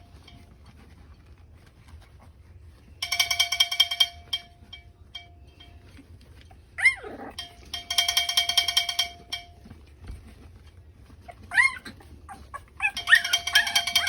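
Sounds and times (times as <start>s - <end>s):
rapid bell-like ringing: 3.0s - 5.9s, 7.4s - 9.7s, 12.8s - 14.0s
puppies whimpering: 6.8s - 7.5s, 11.2s - 14.0s.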